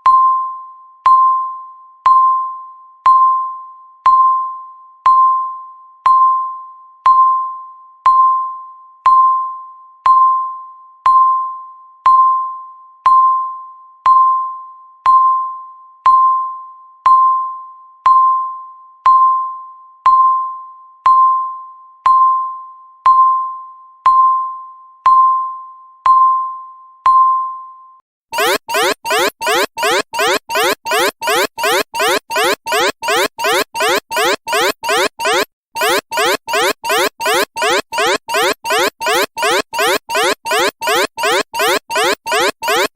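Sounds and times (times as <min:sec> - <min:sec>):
countdown timer beeps: 0:28.4 - 0:42.9.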